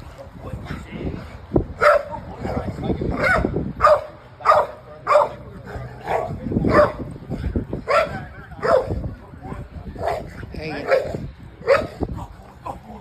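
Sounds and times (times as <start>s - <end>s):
dog barking: 1.8s - 2.6s, 3.2s - 7.1s, 7.9s - 9.0s, 10.0s - 12.0s.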